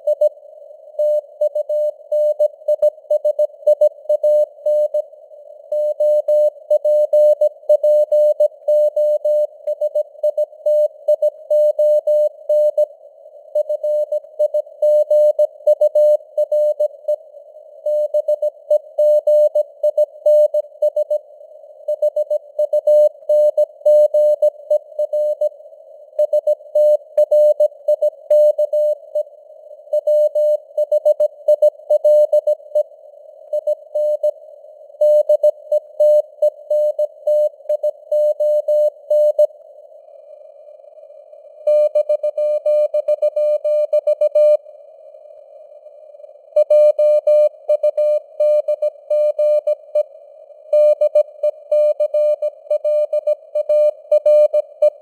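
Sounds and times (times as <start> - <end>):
faint radio noise hiss: 0.0 - 11.5, 12.2 - 14.8, 15.5 - 55.0.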